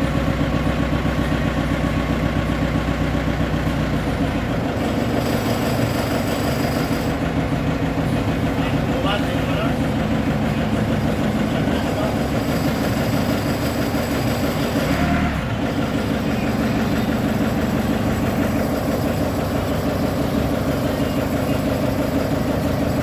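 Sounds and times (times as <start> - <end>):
forklift engine idling: 0.0 - 23.0.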